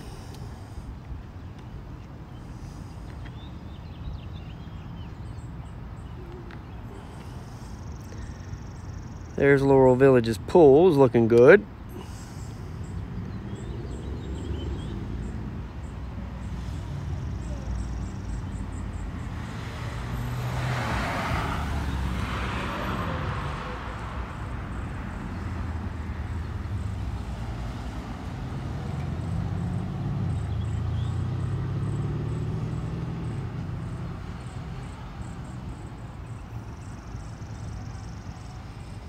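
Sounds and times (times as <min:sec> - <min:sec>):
vehicle tyre hiss: 0:00.0 - 0:01.2, 0:16.3 - 0:18.4.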